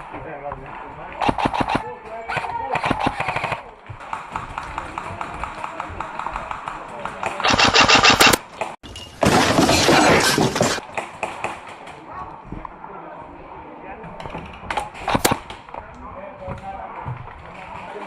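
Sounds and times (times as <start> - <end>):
airsoft guns firing bursts: 1.2 - 6.5, 7.3 - 8.4, 15.1 - 15.5.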